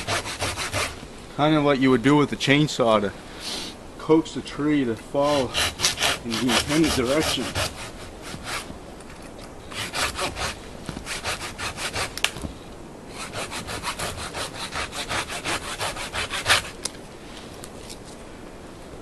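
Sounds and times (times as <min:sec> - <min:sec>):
hand saw cutting wood: 0:00.0 - 0:01.0, 0:05.2 - 0:08.7, 0:09.7 - 0:12.3, 0:13.1 - 0:16.9.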